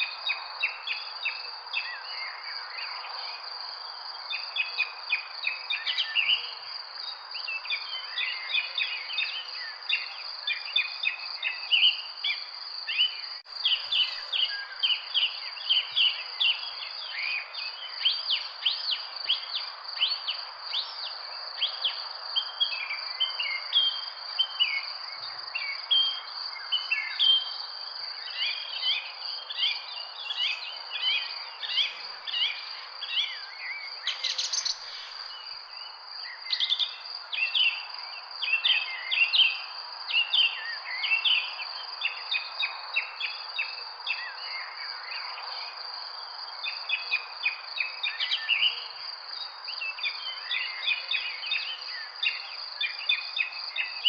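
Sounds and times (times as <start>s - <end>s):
steady background hiss: 24.3s - 43.3s.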